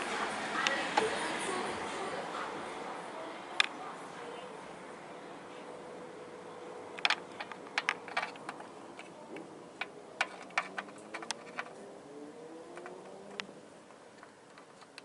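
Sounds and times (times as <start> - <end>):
sharp scratching clicks: 9.8 - 11.8, 14.2 - 15.0.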